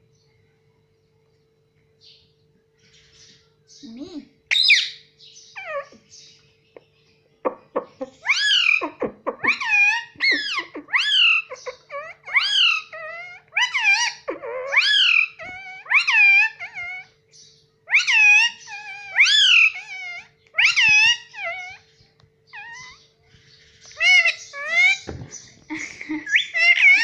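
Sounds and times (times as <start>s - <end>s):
parrot shrill calls: 4.5s - 6.0s, 8.2s - 17.2s, 17.9s - 21.9s, 22.5s - 23.1s, 23.9s - 25.1s, 26.3s - 27.0s.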